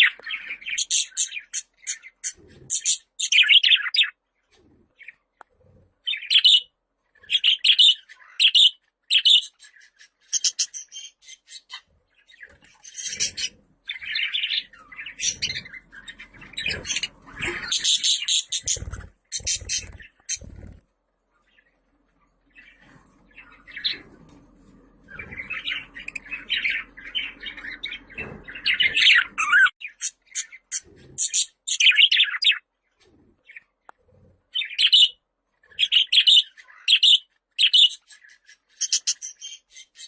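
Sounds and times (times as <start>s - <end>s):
budgerigars chirping: 0.0s - 4.2s, 6.0s - 20.8s, 25.0s - 32.6s, 34.5s - 40.0s.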